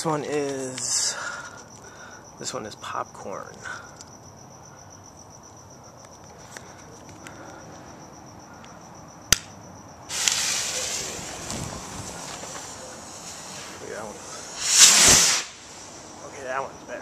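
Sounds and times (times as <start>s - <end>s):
crickets chirring: 0.0s - 17.0s
sharp click: 9.3s - 9.5s
firework rocket launching with hiss: 10.1s - 16.5s.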